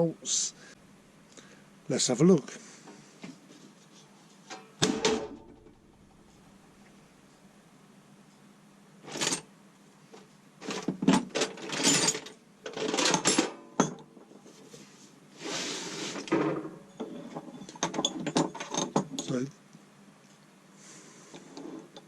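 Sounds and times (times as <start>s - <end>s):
metal tools clinking: 11.4s - 13.5s.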